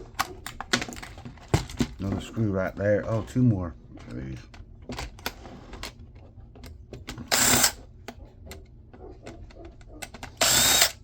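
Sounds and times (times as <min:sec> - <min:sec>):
power drill-driver bursts: 0:07.3 - 0:07.8, 0:10.4 - 0:11.0.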